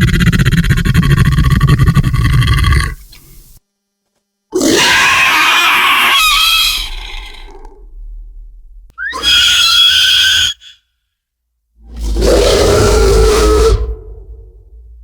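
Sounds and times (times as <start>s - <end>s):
creature screeching: 0.0s - 3.0s, 4.6s - 7.8s, 9.0s - 10.8s, 11.9s - 14.2s.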